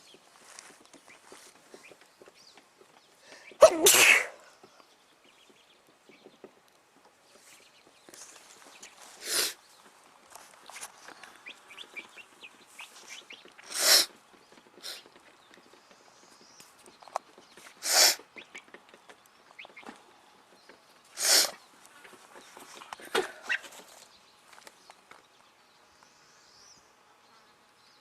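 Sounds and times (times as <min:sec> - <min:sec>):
chickens sneezing: 0:03.3 - 0:04.6, 0:09.1 - 0:09.6, 0:13.1 - 0:14.2, 0:14.8 - 0:15.1, 0:17.8 - 0:18.3, 0:21.1 - 0:21.6, 0:22.8 - 0:23.9.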